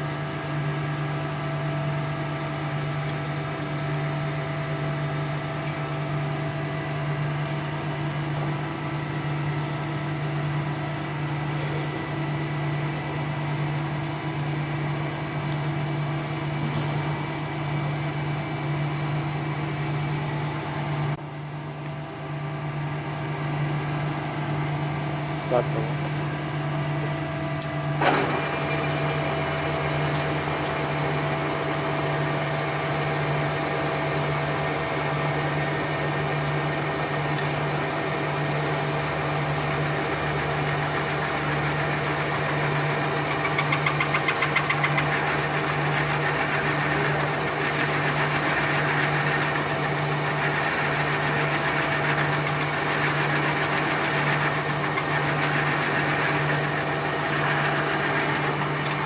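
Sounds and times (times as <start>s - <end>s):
machine humming: 0.0s - 59.0s
fast rattle: 39.7s - 59.0s.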